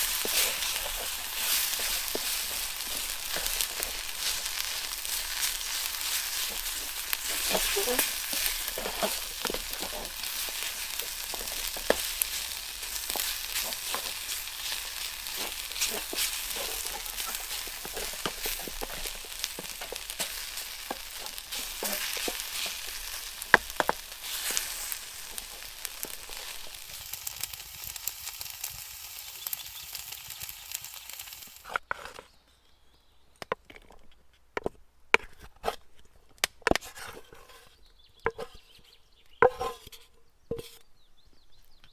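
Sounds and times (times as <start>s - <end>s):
noodles sizzling in a pan: 0.0s - 31.8s.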